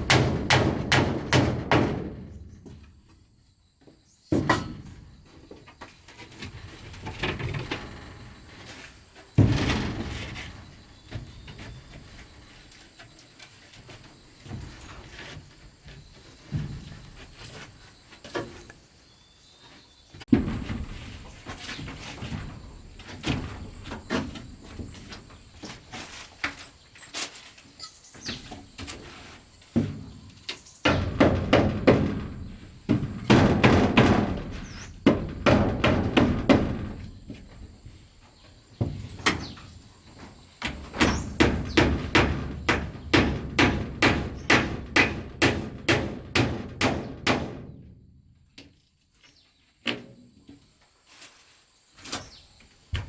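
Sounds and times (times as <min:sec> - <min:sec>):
hand tool knocking on wood: 0:30.8 - 0:37.6, 0:40.8 - 0:47.6.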